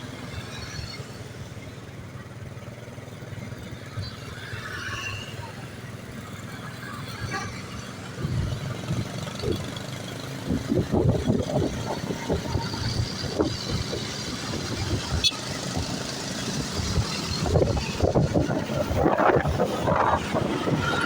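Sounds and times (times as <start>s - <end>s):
vehicle engines passing: 0.0s - 21.0s.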